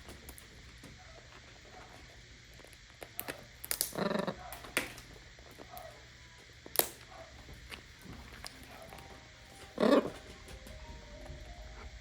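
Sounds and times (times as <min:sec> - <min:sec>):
beak cracking nut shell: 0:02.6 - 0:05.8, 0:06.6 - 0:07.0.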